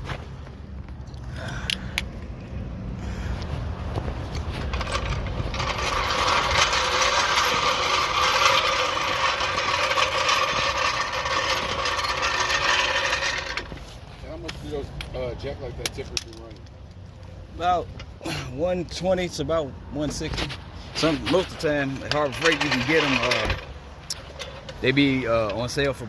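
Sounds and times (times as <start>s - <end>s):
mechanical rattling: 4.4s - 13.8s, 21.5s - 25.9s.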